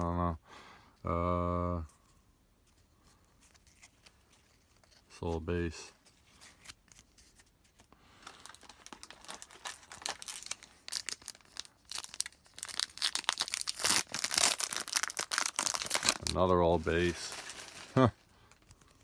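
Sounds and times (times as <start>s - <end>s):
plastic wrapper tearing and crumpling: 6.2s - 19.0s.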